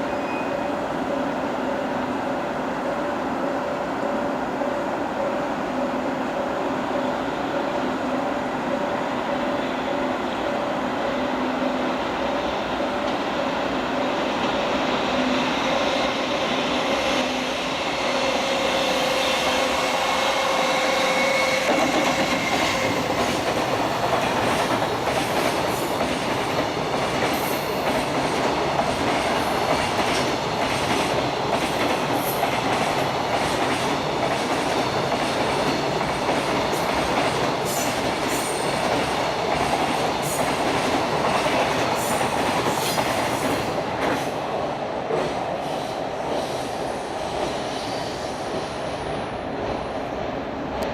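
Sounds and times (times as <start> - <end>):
train humming tones: 0.0 - 50.9.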